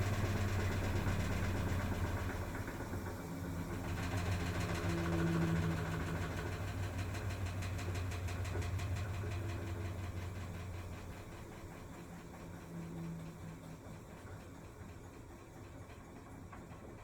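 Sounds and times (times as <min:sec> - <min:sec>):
washing machine humming: 0:00.0 - 0:17.0.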